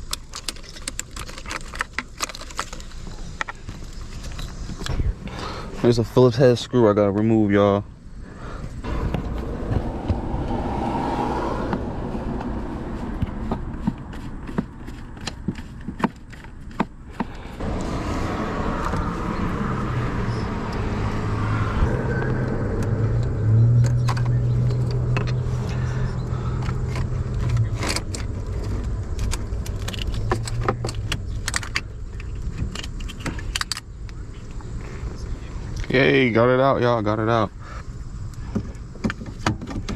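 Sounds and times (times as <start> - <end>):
screwdriver and metal parts rattling: 0.0 - 3.0, 26.6 - 33.8
low hum: 7.9 - 14.4.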